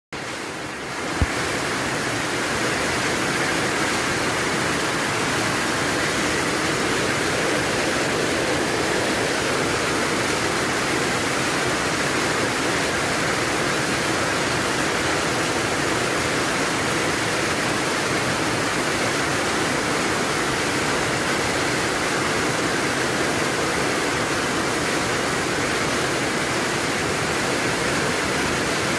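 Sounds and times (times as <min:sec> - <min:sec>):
heavy rain falling: 0:00.2 - 0:28.9.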